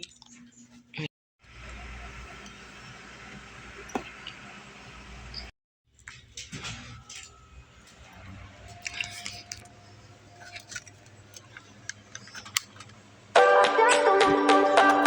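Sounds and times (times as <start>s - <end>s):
small items clicking and rustling: 10.4s - 13.0s.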